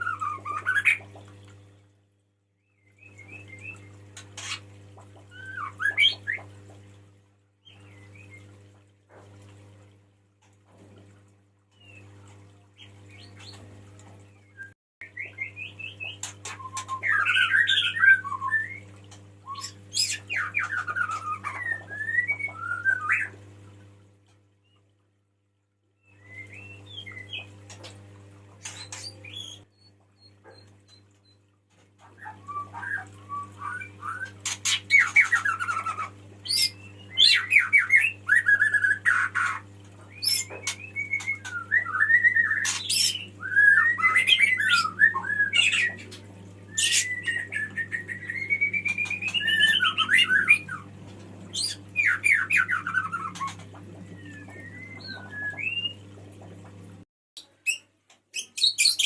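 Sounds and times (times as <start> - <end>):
low electrical hum: 0.0 - 59.0
bird singing whistled phrases: 14.5 - 23.3, 26.1 - 27.5, 32.2 - 46.0, 46.7 - 50.9, 51.6 - 56.1.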